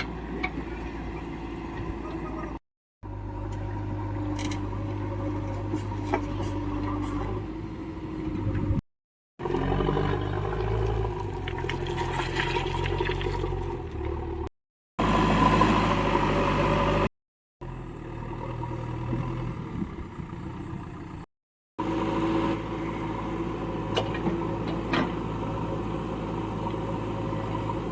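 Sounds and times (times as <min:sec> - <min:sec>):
diesel engine running: 0:13.4 - 0:27.9.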